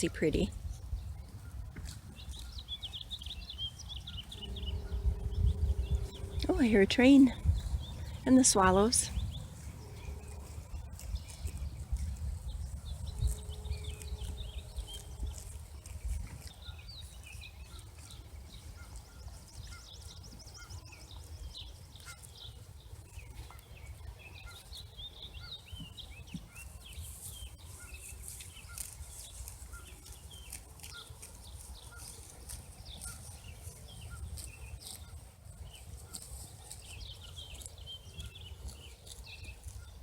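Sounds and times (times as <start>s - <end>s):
swallows twittering: 2.2s - 15.1s
distant train rumble: 3.0s - 11.0s.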